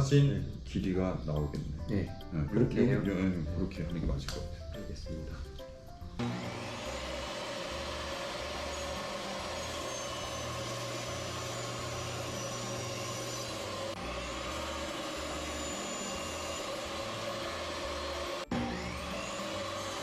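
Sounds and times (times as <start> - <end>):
woodworking machine whirring: 6.2 - 20.0.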